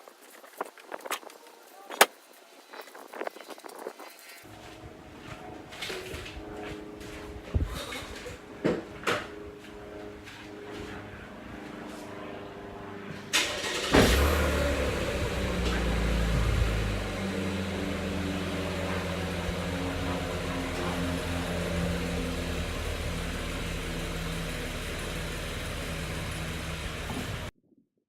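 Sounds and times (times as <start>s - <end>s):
car engine starting and idling: 13.3s - 27.5s.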